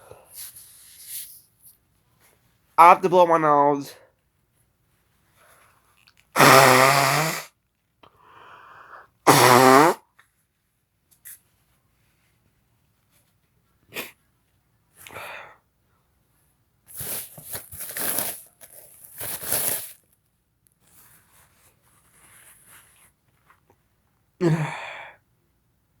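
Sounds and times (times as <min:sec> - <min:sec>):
person sneezing: 0:06.4 - 0:07.5, 0:09.3 - 0:10.0, 0:24.4 - 0:24.9
person sniffing: 0:06.4 - 0:07.5, 0:08.3 - 0:10.0, 0:13.9 - 0:14.2
person blowing nose: 0:06.4 - 0:07.6, 0:09.3 - 0:10.1.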